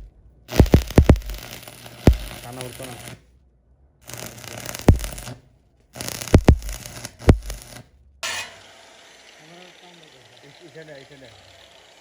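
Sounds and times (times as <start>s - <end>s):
arc welding crackling: 0.0s - 3.2s, 4.0s - 12.0s
sharp metallic knocks: 8.2s - 8.7s.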